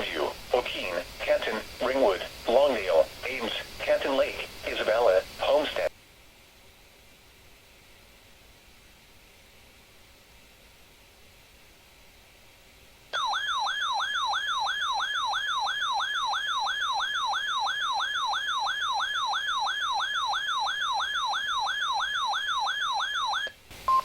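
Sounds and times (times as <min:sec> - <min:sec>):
warbling siren alarm tone: 0:13.2 - 0:23.5.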